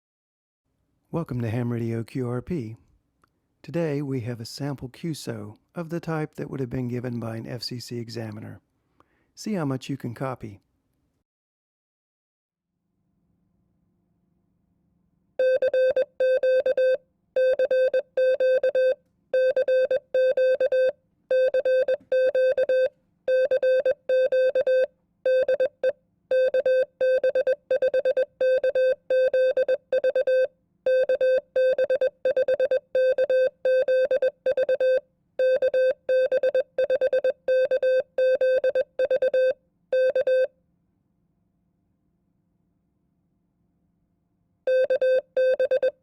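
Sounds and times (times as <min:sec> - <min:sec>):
morse code beeps: 0:15.4 - 0:40.5, 0:44.7 - 0:46.0.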